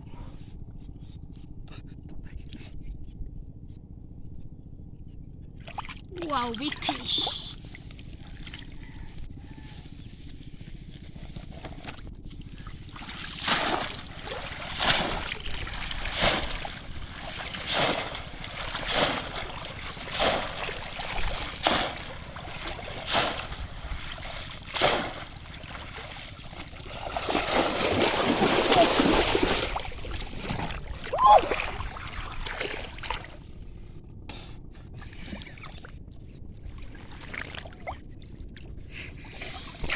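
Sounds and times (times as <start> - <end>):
low steady rumble: 0.0 - 39.9
splashing in shallow water: 11.5 - 33.5, 36.7 - 38.0.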